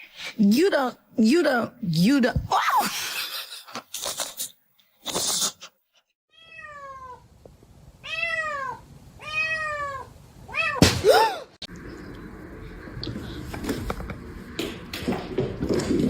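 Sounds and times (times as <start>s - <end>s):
cat meowing: 6.3s - 7.2s, 8.0s - 10.8s.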